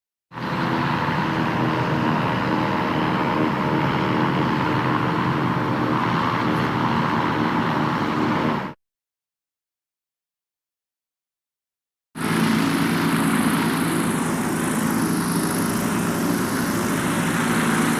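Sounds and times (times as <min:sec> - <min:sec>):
blimp engines and propellers droning: 0:00.3 - 0:08.8, 0:12.2 - 0:17.9.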